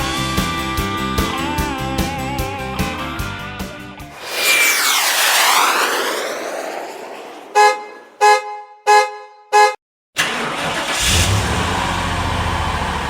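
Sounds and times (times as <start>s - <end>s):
sweeping whoosh: 4.1s - 8.2s
car horn honks: 7.6s - 9.8s.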